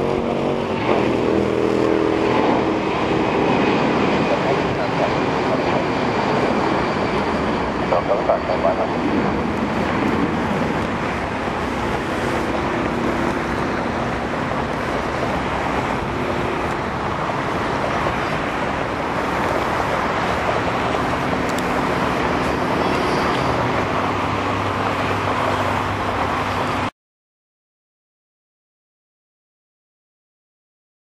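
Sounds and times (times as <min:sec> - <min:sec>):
jet engines rushing: 0:00.0 - 0:26.9.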